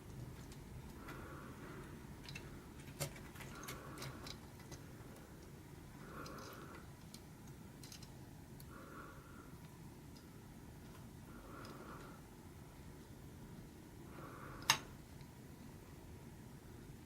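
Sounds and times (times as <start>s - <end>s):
light clicks and ticks: 2.2s - 8.7s.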